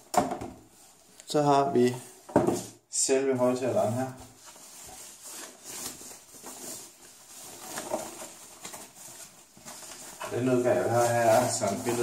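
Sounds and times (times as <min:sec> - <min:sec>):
packaging rustling and knocking: 0:02.2 - 0:02.8, 0:04.2 - 0:10.4.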